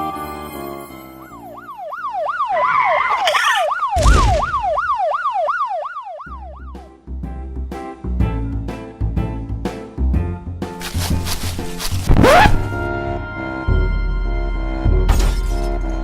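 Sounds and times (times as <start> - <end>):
electronic alarm siren wailing: 1.5 - 6.7
background music: 6.4 - 16.0.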